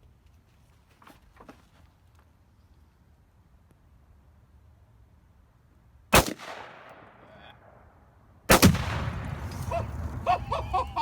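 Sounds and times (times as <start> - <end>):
rifle shots: 6.2 - 7.1, 8.5 - 9.9
explosive target blast rumbling: 8.5 - 10.3.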